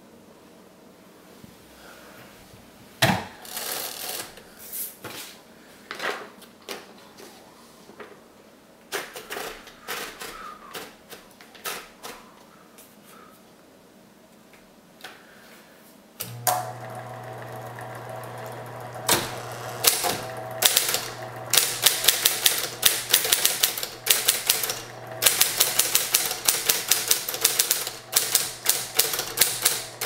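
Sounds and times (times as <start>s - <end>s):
typewriter mechanical rattle: 19.0s - 30.0s
typewriter key strikes: 19.8s - 30.0s.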